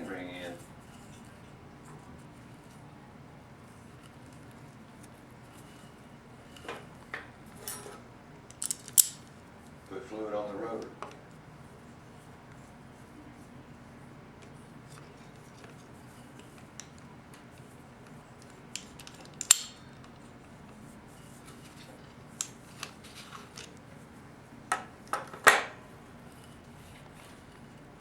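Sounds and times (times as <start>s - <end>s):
small metal parts clinking: 8.5s - 9.3s.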